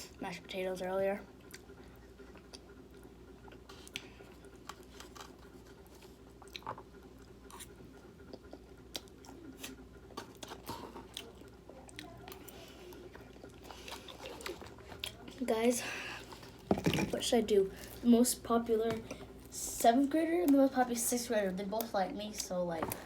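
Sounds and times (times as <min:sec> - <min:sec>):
faint steady hum: 0:00.0 - 0:23.0
chewing with wet clicks: 0:01.4 - 0:09.7, 0:11.1 - 0:15.4.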